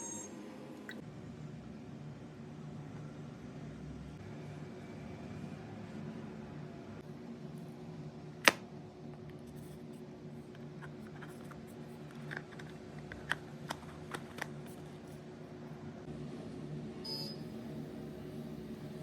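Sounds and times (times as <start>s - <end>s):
steady low hum: 6.3s - 19.0s.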